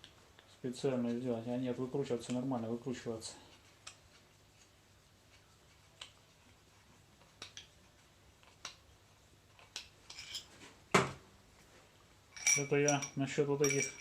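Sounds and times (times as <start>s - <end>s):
sharp metal clink: 12.4s - 14.0s.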